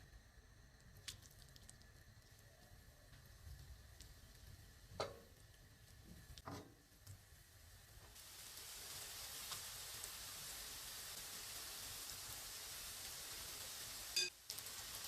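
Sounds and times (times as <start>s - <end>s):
food sizzling in a hot pan: 3.3s - 15.0s.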